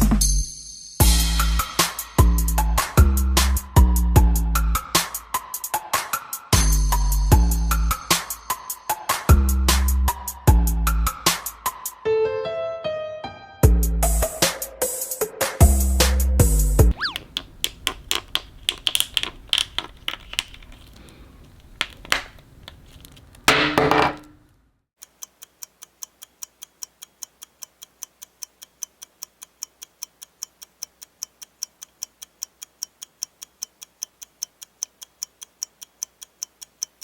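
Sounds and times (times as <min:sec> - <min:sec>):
clock ticking: 0:25.0 - 0:37.0.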